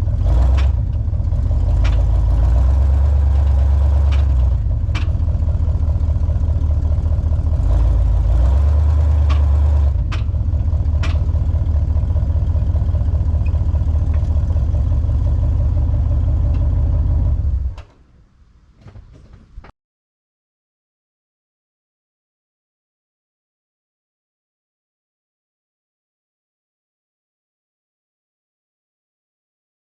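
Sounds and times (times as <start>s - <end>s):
car engine idling: 0.0s - 17.8s.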